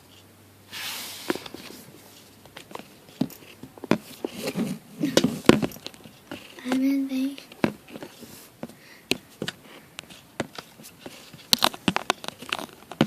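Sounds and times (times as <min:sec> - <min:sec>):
objects knocking and thumping: 0:02.4 - 0:06.8, 0:07.4 - 0:13.0.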